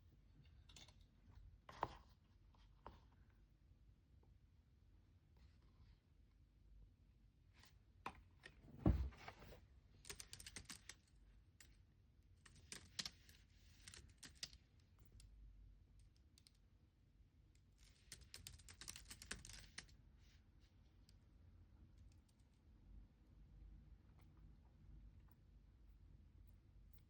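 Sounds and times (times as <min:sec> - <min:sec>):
typing on computer keyboard: 0:18.0 - 0:19.8.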